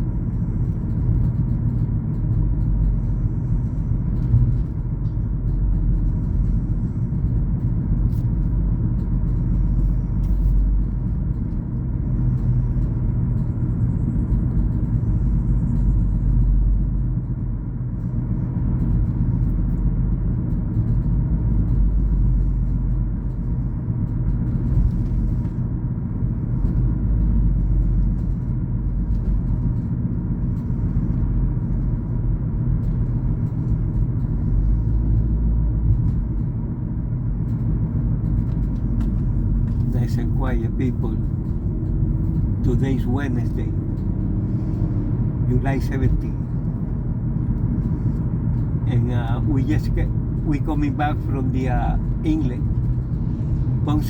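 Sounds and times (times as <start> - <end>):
car engine and road noise: 0.0 - 54.0.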